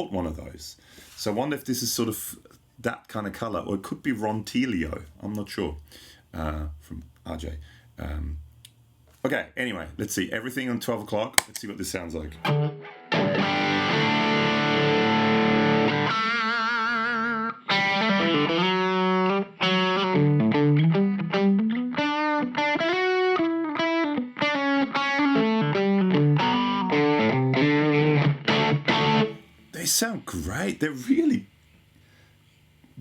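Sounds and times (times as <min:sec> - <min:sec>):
distorted electric guitar: 0:12.4 - 0:29.6.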